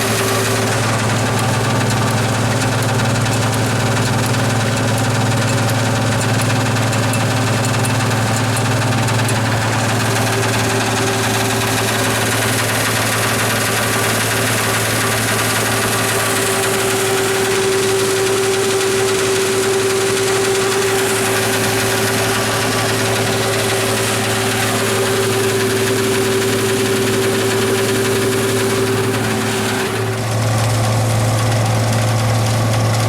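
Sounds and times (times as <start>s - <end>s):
tractor engine running: 0.0s - 33.0s
constant whine: 6.8s - 33.0s.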